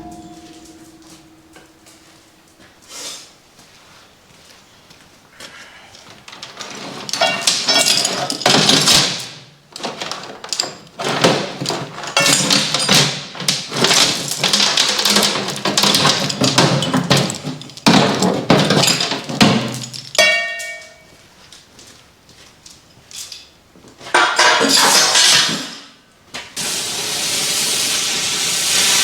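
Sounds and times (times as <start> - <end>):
metal knocking and scraping: 0.0 - 2.5, 6.3 - 21.1
sharp ringing metal knocks: 0.0 - 2.7, 19.6 - 21.1.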